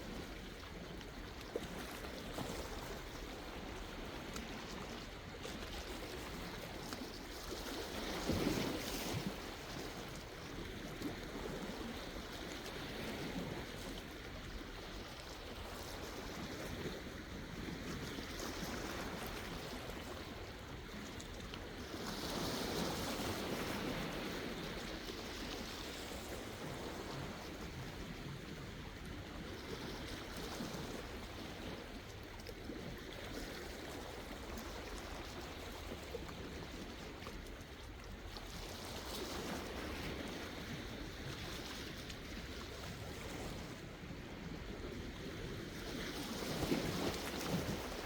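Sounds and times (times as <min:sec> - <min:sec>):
sea waves breaking ashore: 0:32.7 - 0:48.0.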